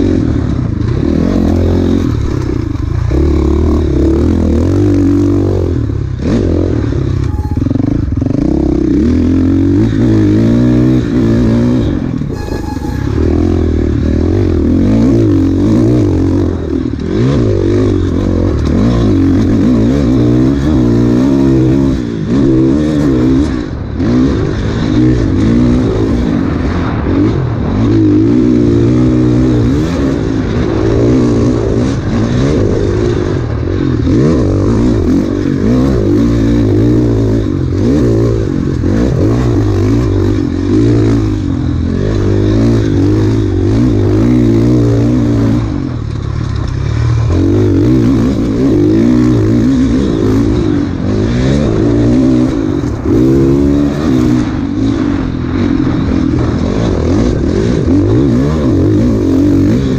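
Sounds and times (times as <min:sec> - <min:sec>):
motorcycle engine revving: 0:00.0 - 0:59.9
motorcycle clattering over rough ground: 0:45.3 - 0:49.4.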